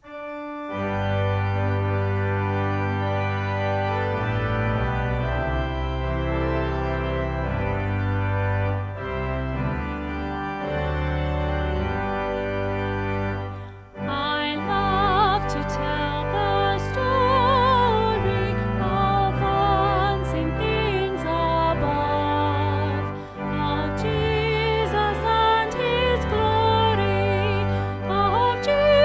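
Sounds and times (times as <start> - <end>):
organ playing chords: 0.0 - 29.0.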